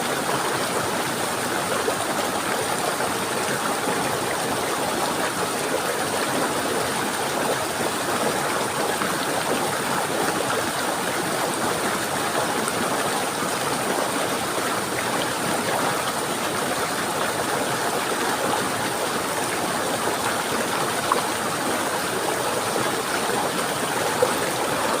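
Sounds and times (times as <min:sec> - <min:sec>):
flowing water: 0:00.0 - 0:25.0.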